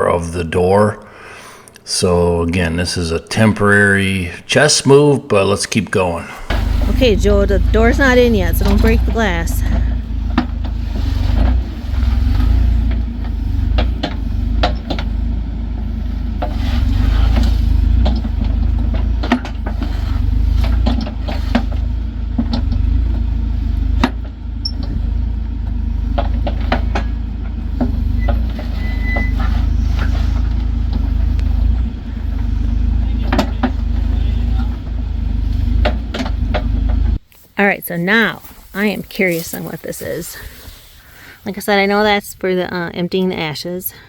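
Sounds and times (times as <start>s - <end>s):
heavy machinery engine drone: 6.0s - 37.3s
rocks knocking and clattering: 8.6s - 28.7s, 29.3s - 40.1s.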